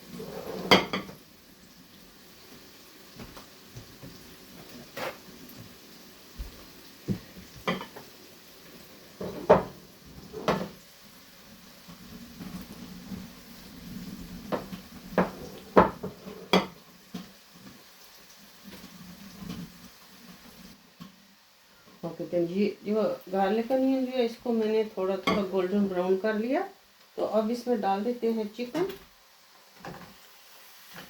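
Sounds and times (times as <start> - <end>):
utensil scraping a pan: 0.0 - 1.1
onion frying in oil: 0.0 - 31.0.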